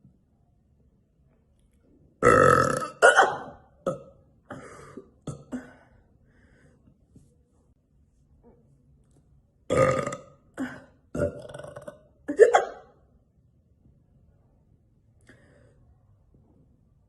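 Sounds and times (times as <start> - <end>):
woman burping: 2.2 - 5.9, 9.7 - 12.9.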